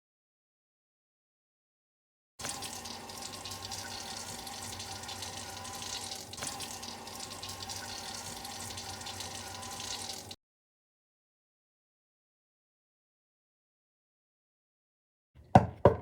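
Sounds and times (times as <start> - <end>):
tap water running: 2.4 - 10.4.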